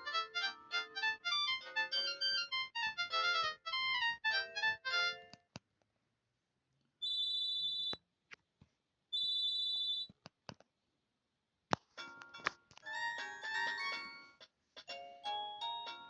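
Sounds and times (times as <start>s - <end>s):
ringtone melody: 0.0s - 5.4s, 7.0s - 8.0s, 12.0s - 16.0s
high-pitched phone beep: 7.0s - 8.0s, 9.2s - 10.1s.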